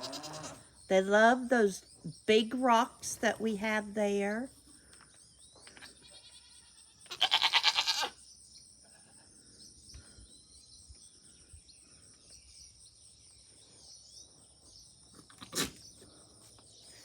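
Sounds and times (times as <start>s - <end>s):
goat bleating: 0.0s - 0.6s, 6.0s - 8.2s
faint bird chirps: 8.2s - 17.0s.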